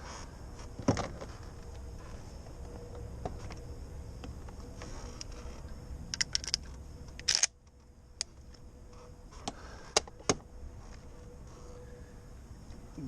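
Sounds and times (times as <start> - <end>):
gun metallic clicks: 6.1 - 7.6.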